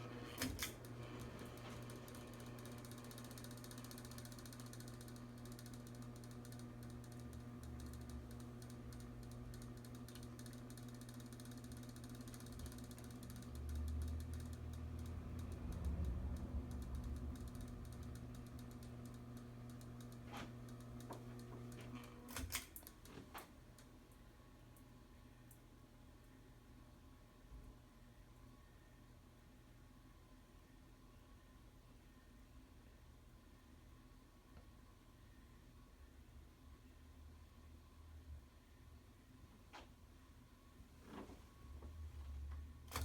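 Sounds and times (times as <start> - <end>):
ceiling fan motor humming: 0.0 - 24.1
fast light ticking: 3.0 - 20.9.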